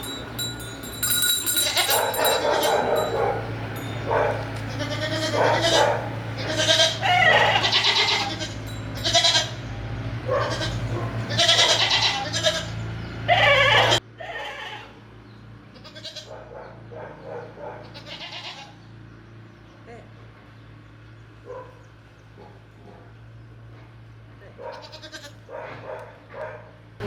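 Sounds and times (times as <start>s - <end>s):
goats bleating: 0.0s - 9.6s, 10.4s - 15.0s, 15.7s - 16.3s, 17.8s - 18.8s, 24.7s - 25.5s.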